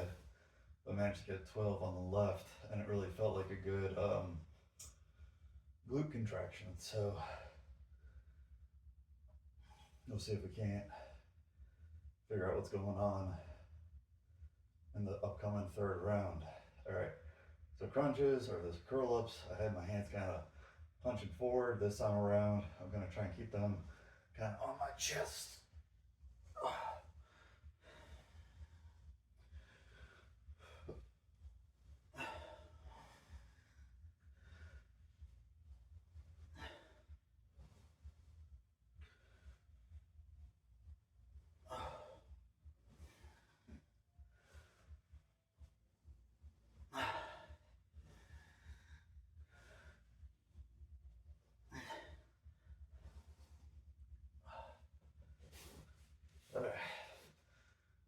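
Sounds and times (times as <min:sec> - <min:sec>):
low room hum: 0:00.0 - 0:58.0
man breathing: 0:25.6 - 0:40.0, 0:41.4 - 0:58.0.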